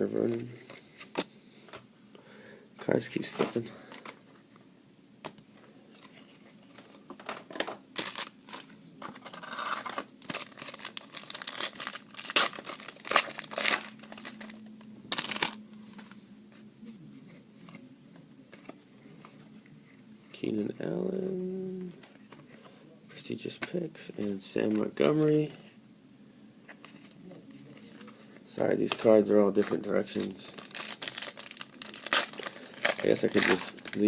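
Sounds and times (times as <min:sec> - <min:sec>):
card pack wrapper tearing and crinkling: 0:08.0 - 0:15.6, 0:28.8 - 0:34.0.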